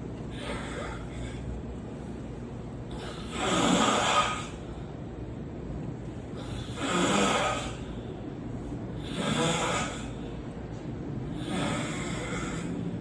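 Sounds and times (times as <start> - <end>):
person snoring: 3.0 - 4.6, 9.0 - 10.2, 11.3 - 12.8.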